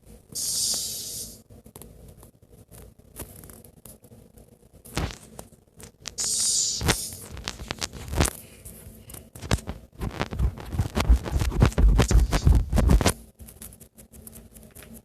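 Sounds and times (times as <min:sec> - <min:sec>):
short hiss: 0:00.4 - 0:01.4, 0:06.2 - 0:07.3
scrapes knocks and low thumps: 0:10.0 - 0:13.1.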